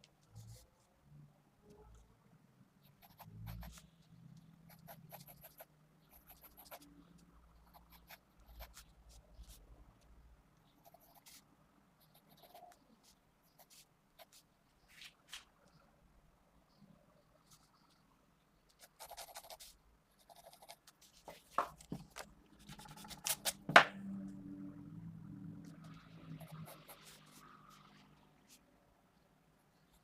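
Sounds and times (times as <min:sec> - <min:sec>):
pencil scratching on paper: 0:02.8 - 0:03.9, 0:04.7 - 0:06.8, 0:10.8 - 0:11.4, 0:12.0 - 0:14.5, 0:18.7 - 0:22.0, 0:22.6 - 0:23.6.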